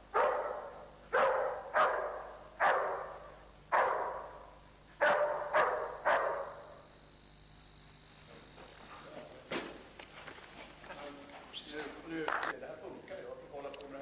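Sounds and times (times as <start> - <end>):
dog barking loudly with echo: 0.1 - 6.8.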